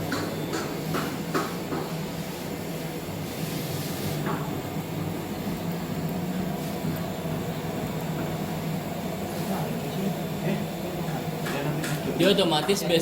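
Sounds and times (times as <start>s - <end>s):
laboratory equipment humming: 0.0s - 13.0s.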